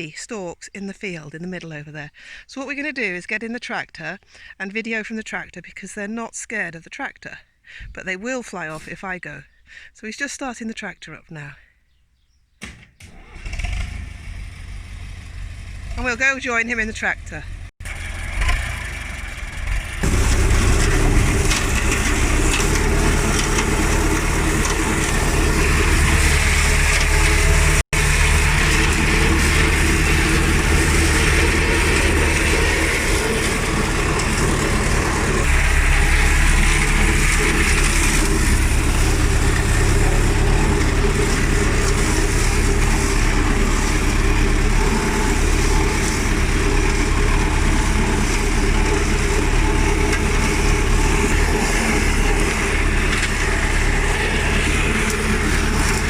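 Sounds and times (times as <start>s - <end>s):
tractor engine running: 12.6s - 56.0s.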